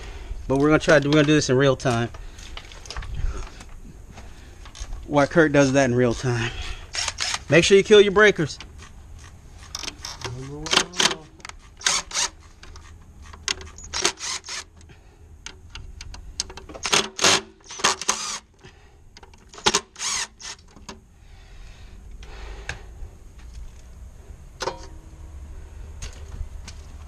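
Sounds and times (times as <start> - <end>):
steady low hum: 0.0 - 27.0
sharp clicks and knocks: 8.6 - 18.3.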